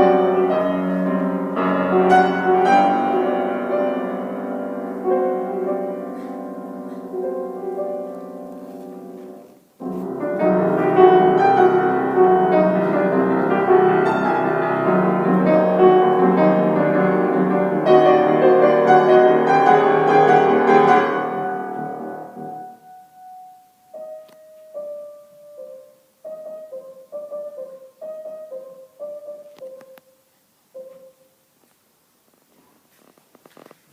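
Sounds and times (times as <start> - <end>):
solo piano: 0.0 - 31.6.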